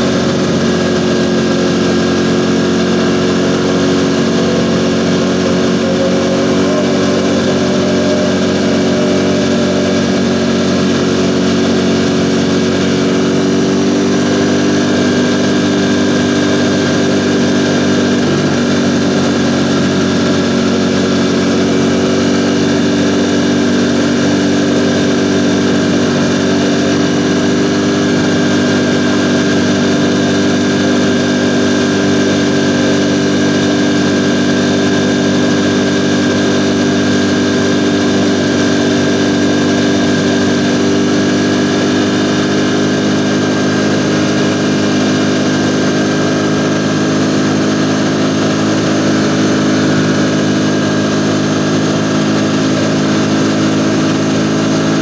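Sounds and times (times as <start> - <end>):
motorcycle engine running steadily: 0.0 - 55.0.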